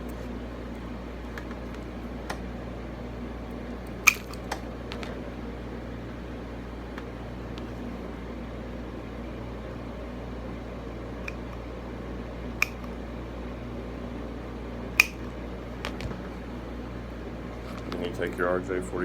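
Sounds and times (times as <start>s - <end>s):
steady low hum: 0.0s - 19.0s
wire cutters snipping: 3.9s - 4.6s, 11.2s - 11.6s, 12.6s - 13.0s, 15.0s - 15.4s.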